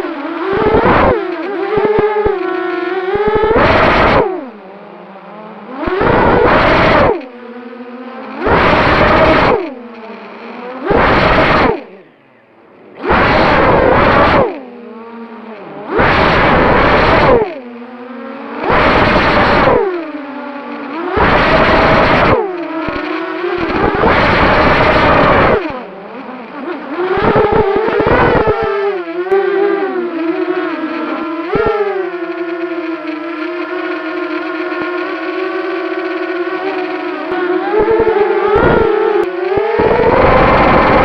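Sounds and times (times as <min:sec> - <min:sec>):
quadcopter motors whining: 0:00.0 - 0:41.0.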